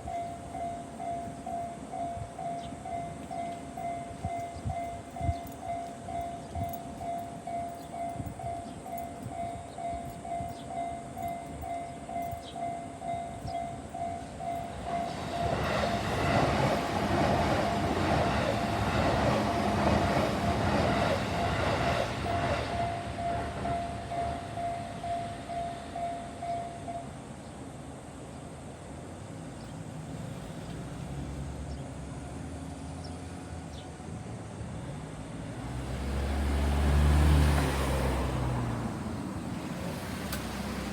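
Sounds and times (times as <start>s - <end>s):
railroad crossing bell clanging: 0.0s - 27.3s
street sound: 0.0s - 40.9s
train passing with rumble: 0.0s - 40.9s.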